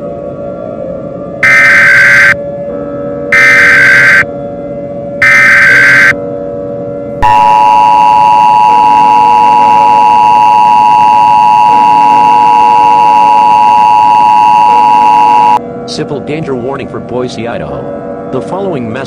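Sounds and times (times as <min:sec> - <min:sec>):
two-tone alarm: 0:01.4 - 0:02.4, 0:03.3 - 0:04.3, 0:05.2 - 0:06.2, 0:07.2 - 0:15.6.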